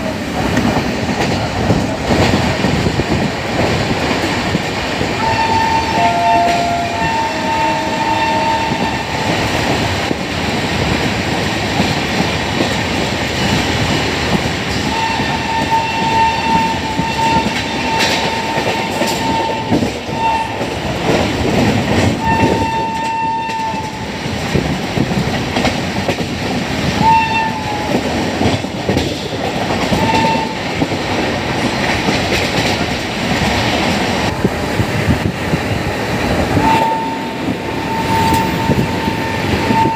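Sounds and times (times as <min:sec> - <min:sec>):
train rumble and wheel clatter: 0:00.0 - 0:39.9
locomotive horn blasts: 0:05.2 - 0:09.2, 0:14.9 - 0:20.7, 0:22.2 - 0:24.0, 0:27.0 - 0:28.0, 0:29.9 - 0:30.6, 0:36.5 - 0:39.9.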